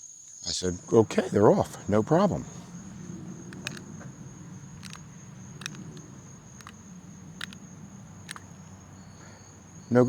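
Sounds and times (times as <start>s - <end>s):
insects trilling: 0.0s - 10.0s
sharp insect chirp: 0.0s - 10.0s.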